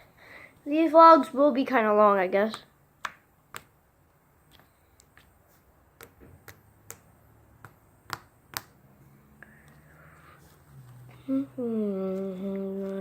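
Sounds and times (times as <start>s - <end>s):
sharp clicks and taps: 2.5s - 3.8s, 6.0s - 8.8s.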